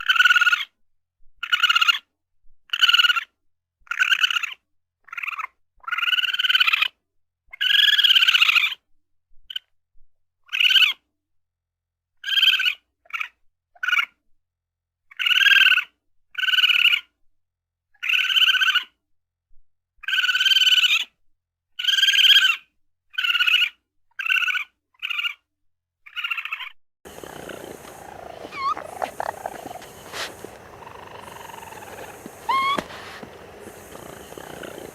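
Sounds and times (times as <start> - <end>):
background hiss: 27.1 - 34.9
faint chirps: 27.1 - 34.9
raccoon high-pitched calls: 27.1 - 34.9.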